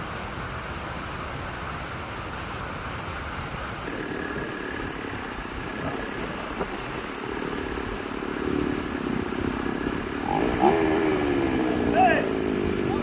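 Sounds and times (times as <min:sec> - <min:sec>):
chainsaw engine running: 0:03.8 - 0:13.0.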